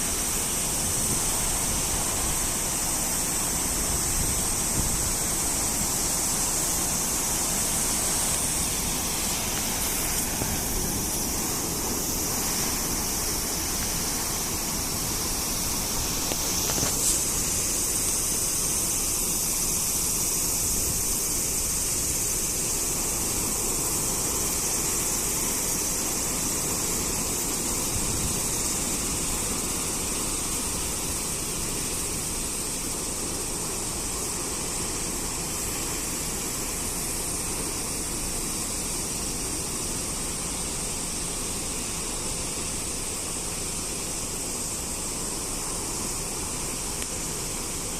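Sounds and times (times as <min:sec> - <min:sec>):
ocean waves breaking: 0:00.0 - 0:19.8.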